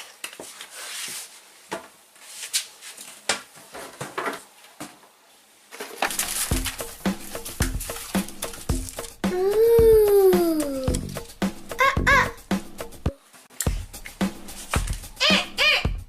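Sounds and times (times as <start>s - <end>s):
music with beat and deep bass: 6.5s - 16.0s.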